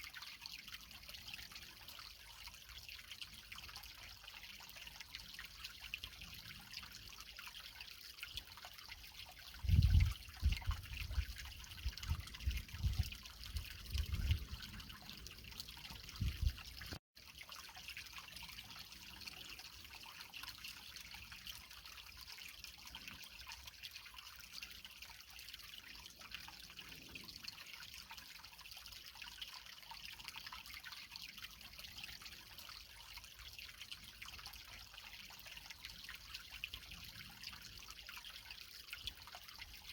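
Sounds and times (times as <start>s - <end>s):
creek trickling over rocks: 0.0s - 39.9s.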